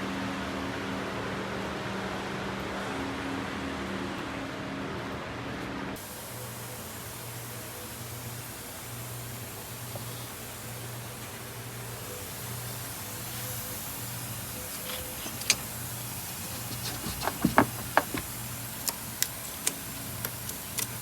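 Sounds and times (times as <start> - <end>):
steady hiss: 6.0 - 21.0
sharp clicks and knocks: 16.5 - 20.9.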